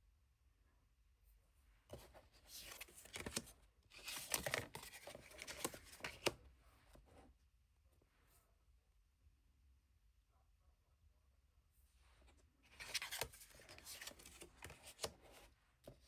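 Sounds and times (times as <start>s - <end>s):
cards rustling and crinkling: 1.9s - 6.4s, 12.6s - 16.0s.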